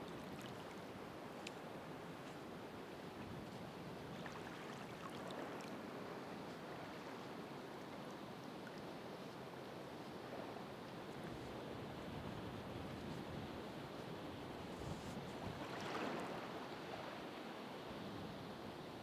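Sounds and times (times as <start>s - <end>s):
ocean waves on shore: 0.0s - 18.7s
faint ticks: 1.4s - 1.6s.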